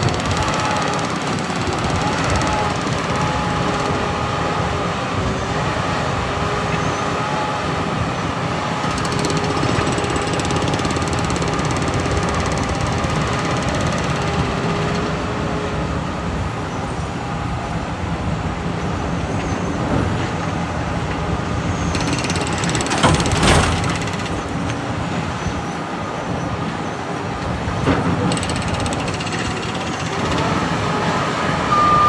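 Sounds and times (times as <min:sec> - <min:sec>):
heavy construction equipment engine: 0:00.0 - 0:32.0
mechanical clanking and rattling: 0:08.8 - 0:15.1, 0:19.4 - 0:25.3, 0:27.4 - 0:30.8.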